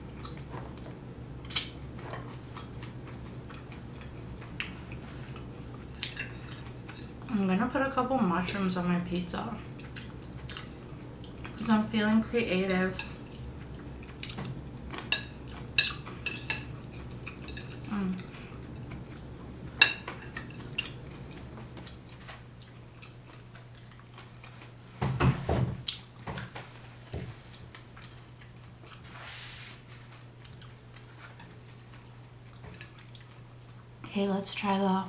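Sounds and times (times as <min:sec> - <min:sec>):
cutlery clinking on dishes: 0:19.8 - 0:21.0.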